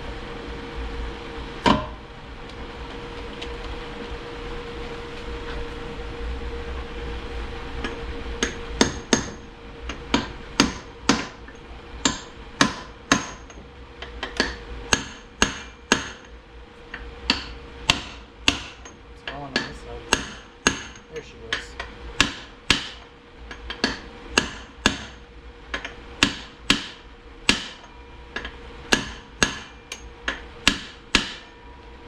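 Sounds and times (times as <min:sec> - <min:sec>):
hammer tapping on metal part: 0:07.8 - 0:16.3, 0:17.3 - 0:25.1.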